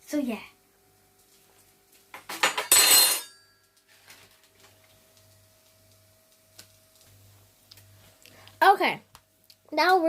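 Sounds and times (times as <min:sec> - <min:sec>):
utensils and dishes clattering: 0:02.1 - 0:04.3
short metallic ring: 0:02.7 - 0:03.6.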